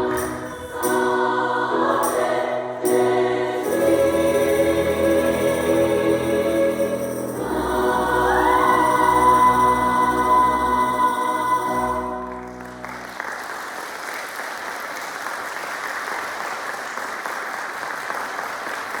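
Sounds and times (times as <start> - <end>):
women's choir singing: 0.0 - 12.4
audience applauding: 12.2 - 19.0.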